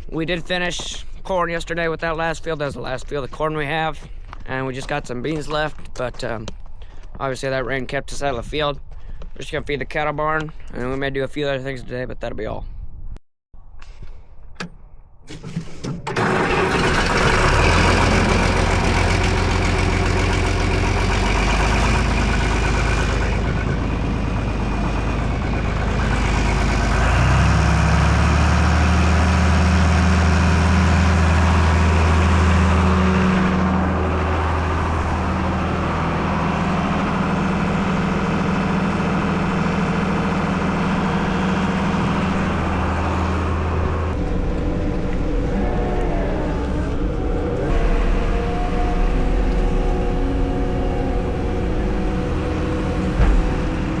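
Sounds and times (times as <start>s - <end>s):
engine running: 15.3s - 54.0s.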